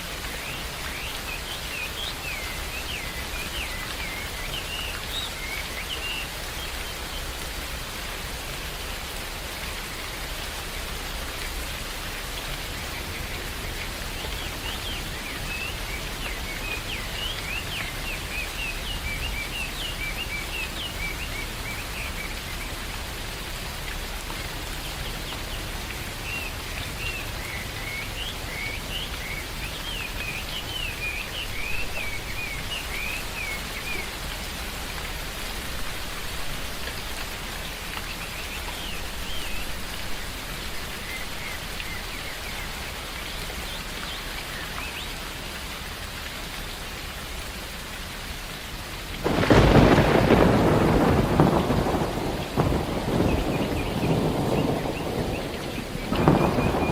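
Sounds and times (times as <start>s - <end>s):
steady rain in a forest: 0.0s - 56.9s
loud thunder clap: 49.2s - 56.9s
birds chirping: 49.3s - 56.9s.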